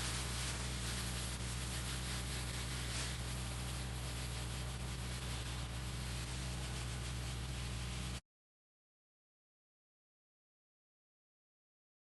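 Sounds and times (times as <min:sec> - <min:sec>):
low motor hum: 0:00.0 - 0:08.2
pressure washer water spray hiss: 0:00.0 - 0:08.2.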